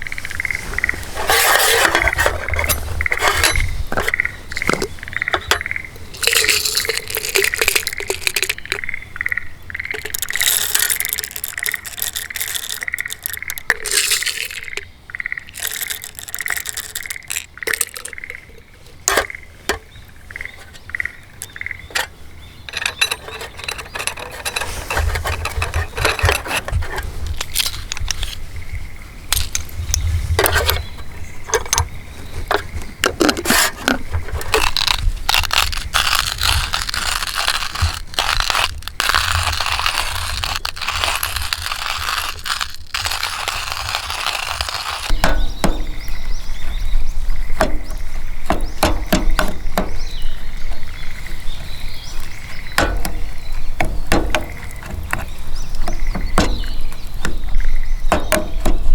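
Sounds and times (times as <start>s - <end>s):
utensil scraping in a pot: 0.0s - 8.9s, 9.9s - 14.8s, 15.5s - 28.5s, 29.3s - 45.8s.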